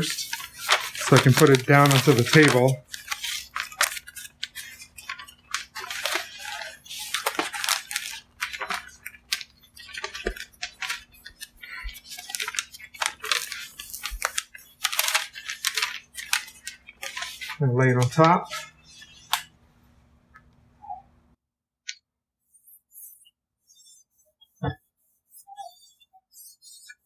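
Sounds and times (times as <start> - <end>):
contact paper crackling: 0.0 - 20.7.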